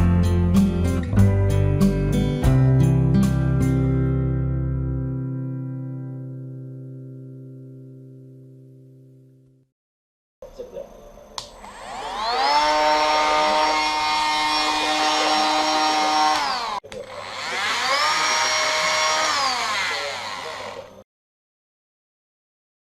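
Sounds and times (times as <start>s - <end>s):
electric motor whining: 11.4s - 21.0s.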